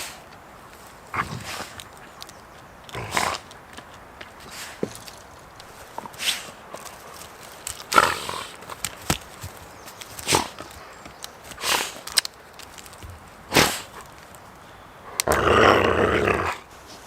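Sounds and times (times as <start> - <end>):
dog huffing and snorting: 1.2 - 1.8.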